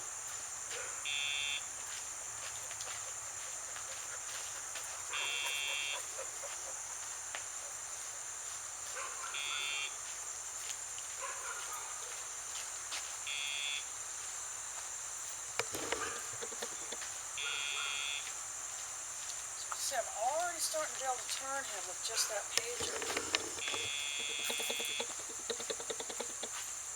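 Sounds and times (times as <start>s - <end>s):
high-pitched hiss: 12.4s - 26.9s
sharp clicks: 15.6s - 17.0s, 22.3s - 26.5s.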